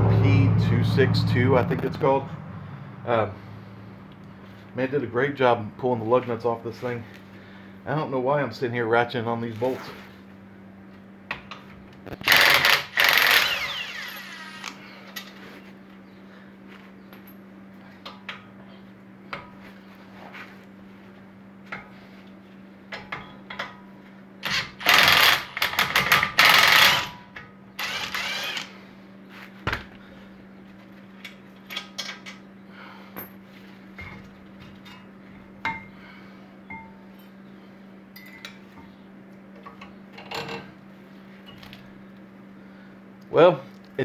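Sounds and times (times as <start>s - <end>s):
impact wrench hammering bolts: 12.2s - 14.6s, 24.4s - 27.2s
tools and parts clinking: 38.2s - 38.7s.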